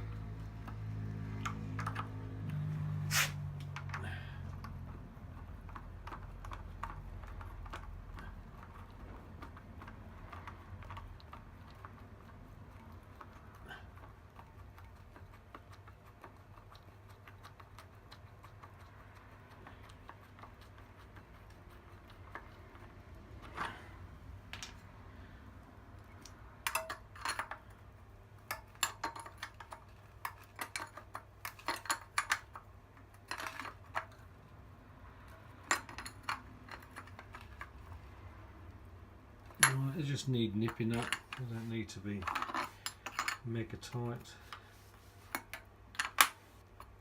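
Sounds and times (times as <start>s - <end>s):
spanner clicking on nuts: 26.2s - 27.7s, 28.4s - 34.2s.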